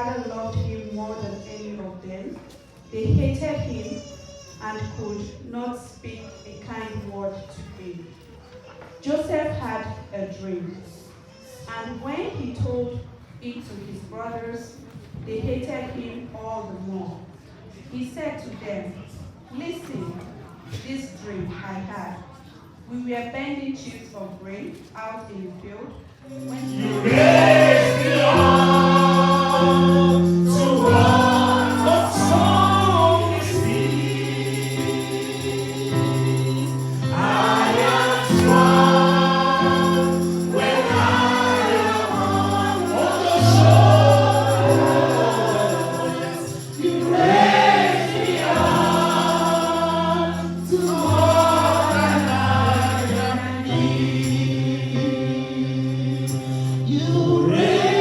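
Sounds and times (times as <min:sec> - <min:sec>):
gospel choir singing: 0:26.2 - 0:58.0
sustained keyboard chords: 0:26.3 - 0:54.4.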